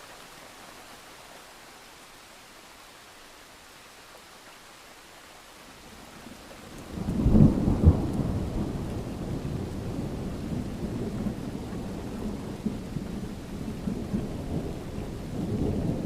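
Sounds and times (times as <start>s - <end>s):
rain hiss: 0.0s - 16.0s
thunderclap and rumble: 6.7s - 16.0s.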